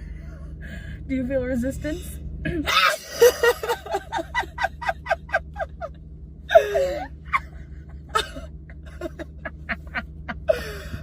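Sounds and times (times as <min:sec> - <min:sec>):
woman giggling: 0:06.5 - 0:11.0.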